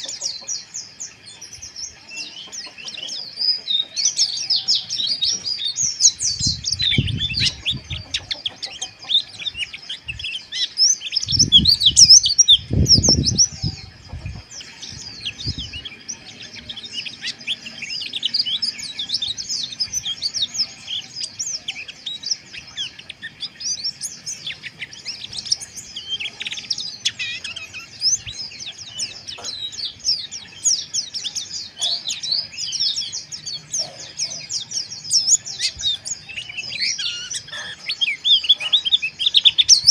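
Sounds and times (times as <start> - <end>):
birds chattering twitter: 0.0 - 39.9.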